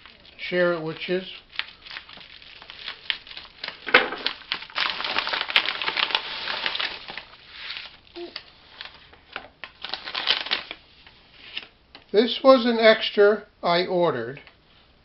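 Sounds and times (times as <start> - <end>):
packaging crinkling and rustling: 0.0 - 11.8.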